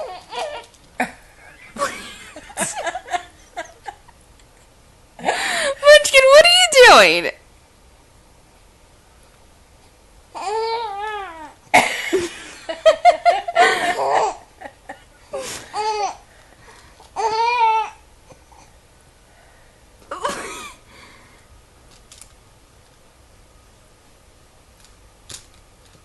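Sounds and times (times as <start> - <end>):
baby growling noises: 10.3 - 11.6.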